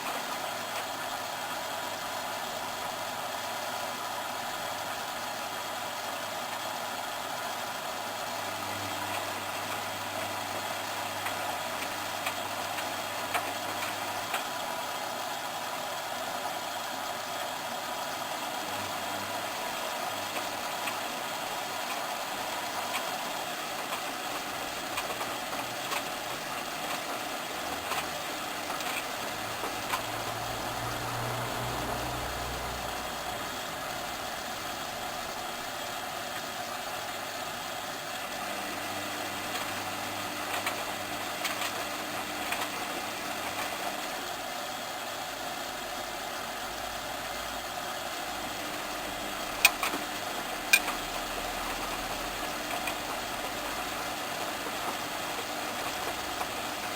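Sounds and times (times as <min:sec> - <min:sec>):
washing machine drum motor: 0:07.8 - 0:16.4, 0:17.1 - 0:56.9
steady machine noise: 0:08.3 - 0:37.2, 0:45.8 - 0:56.9.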